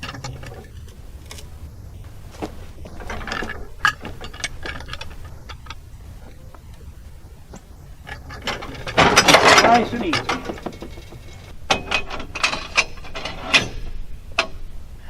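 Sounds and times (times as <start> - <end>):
log knocking and scraping: 0.0 - 11.5
metallic clicks: 0.0 - 14.8.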